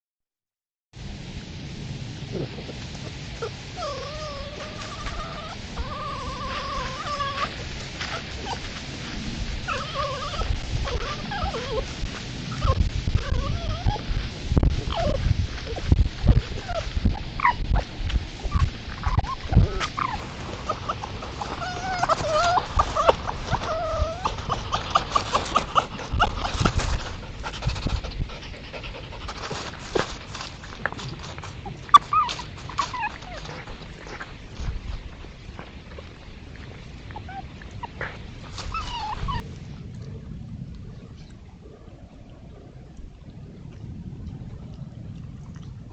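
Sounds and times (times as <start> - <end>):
foxes whining and whimpering: 3.4 - 8.8, 9.6 - 27.2, 31.3 - 34.7, 37.0 - 39.5
low rumbling thumps: 5.7 - 31.9.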